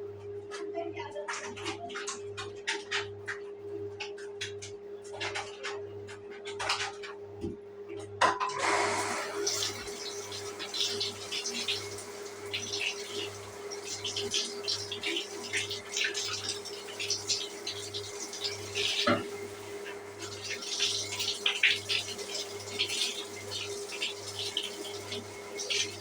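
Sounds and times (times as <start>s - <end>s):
shower water splashing: 8.6s - 26.0s.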